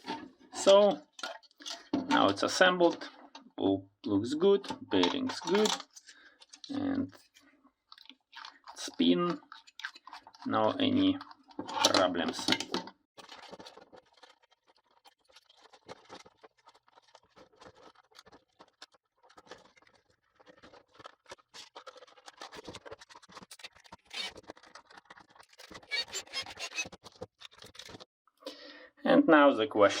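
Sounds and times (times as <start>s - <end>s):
parts clicking and scraping: 4.6s - 10.5s, 21.0s - 28.1s.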